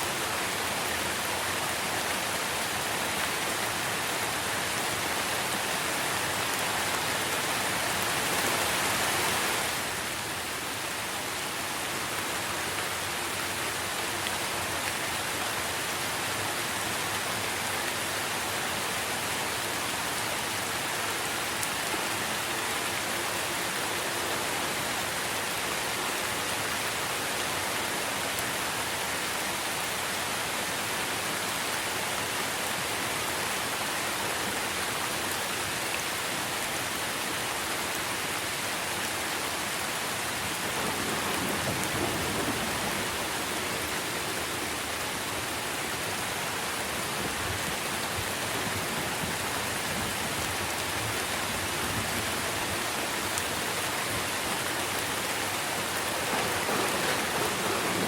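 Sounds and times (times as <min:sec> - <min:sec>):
rain falling on leaves: 0:00.0 - 0:58.0.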